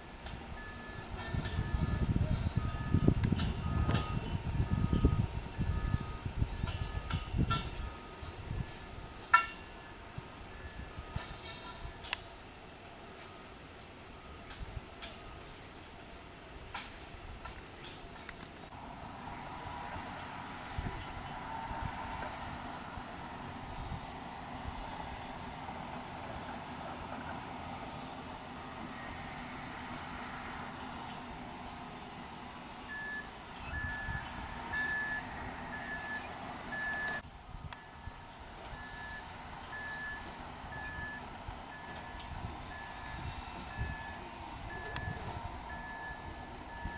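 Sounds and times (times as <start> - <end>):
high-pitched insect chorus: 0.0 - 46.9
short electronic beeps: 32.9 - 37.2.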